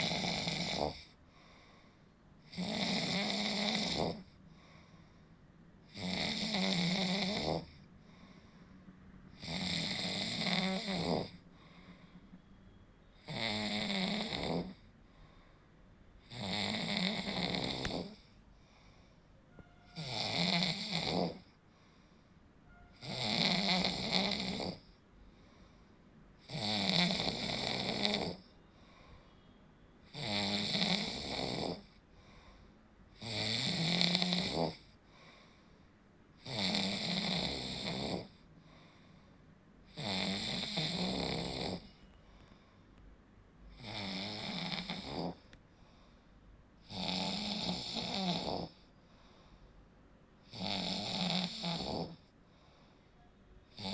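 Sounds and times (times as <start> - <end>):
person snoring: 0.0 - 1.8, 2.4 - 4.9, 5.8 - 8.5, 9.3 - 12.1, 13.2 - 15.4, 16.2 - 18.9, 19.9 - 21.6, 22.9 - 25.0, 26.4 - 29.0, 30.1 - 32.0, 33.1 - 35.6, 36.4 - 39.0, 39.9 - 42.0, 43.7 - 45.6, 46.8 - 48.9, 50.4 - 52.3, 53.7 - 53.9.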